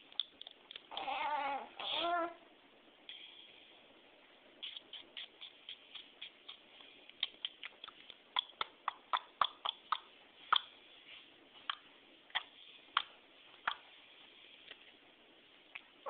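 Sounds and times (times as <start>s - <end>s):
person making sharp clicks: 4.6s - 10.7s.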